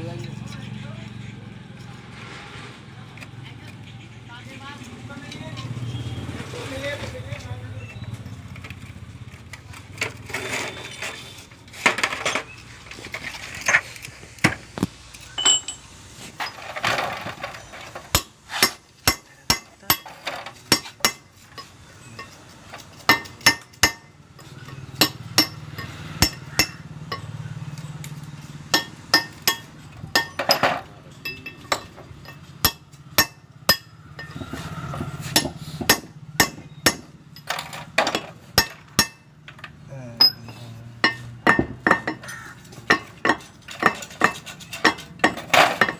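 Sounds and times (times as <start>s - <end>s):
hammer tapping on steel: 23.1s - 27.4s, 28.7s - 30.6s, 31.2s - 37.5s.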